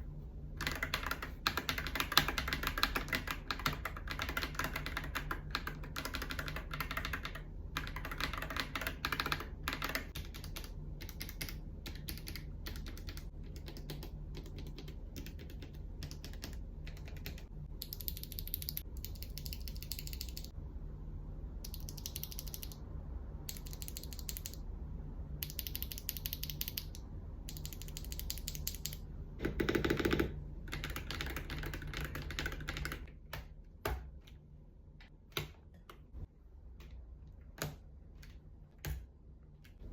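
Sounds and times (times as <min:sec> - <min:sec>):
fast typing on mechanical keyboard: 0:00.6 - 0:20.5, 0:21.7 - 0:22.8, 0:23.5 - 0:24.6, 0:25.4 - 0:34.0.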